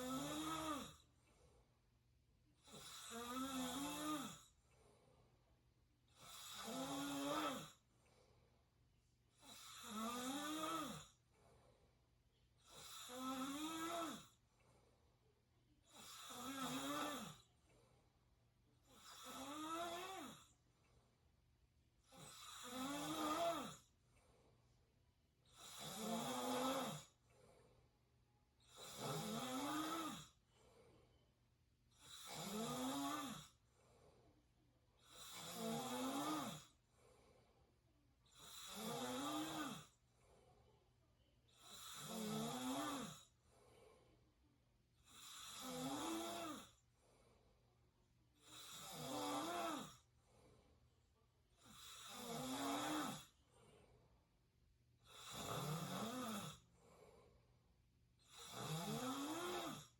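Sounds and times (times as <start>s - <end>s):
person snoring: 0.0s - 1.1s, 2.6s - 4.5s, 6.1s - 7.8s, 9.4s - 11.2s, 12.6s - 14.4s, 15.9s - 17.5s, 18.8s - 20.5s, 22.1s - 23.9s, 25.5s - 27.2s, 28.7s - 30.4s, 32.0s - 33.6s, 35.0s - 36.8s, 38.3s - 40.0s, 41.6s - 43.3s, 45.0s - 46.8s, 48.4s - 50.0s, 51.6s - 53.4s, 55.0s - 56.7s, 58.2s - 59.9s.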